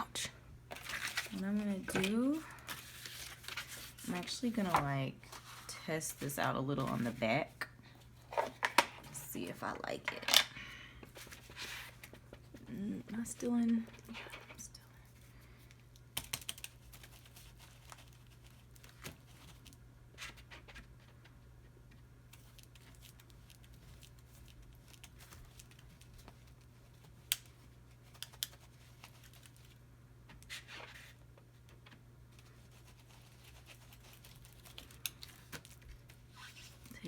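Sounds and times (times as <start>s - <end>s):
low steady hum: 0.0s - 37.0s
paper rustling: 0.7s - 7.2s, 30.4s - 37.0s.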